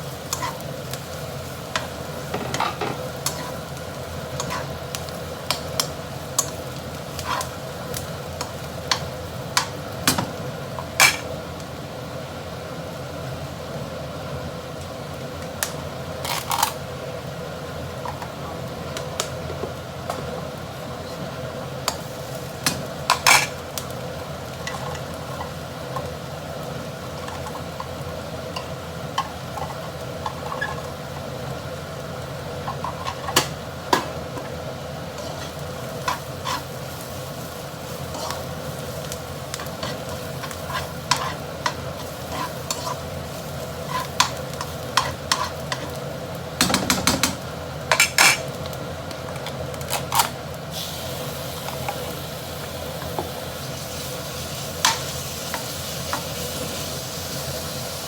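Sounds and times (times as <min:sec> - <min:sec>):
noodles sizzling in a pan: 0:00.0 - 0:58.0
metal spatula scraping a pan: 0:35.2 - 0:36.7, 0:39.7 - 0:43.0.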